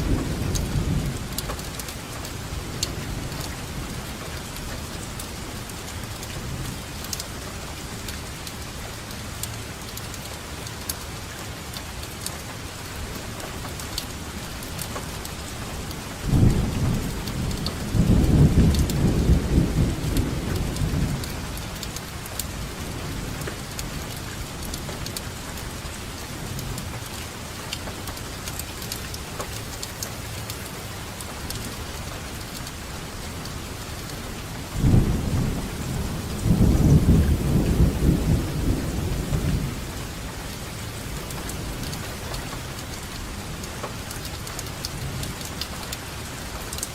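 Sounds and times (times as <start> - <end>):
raindrops ticking: 0.0 - 46.9
steady rainfall: 0.0 - 46.9
thunder rumbling: 16.2 - 27.0, 33.9 - 42.8.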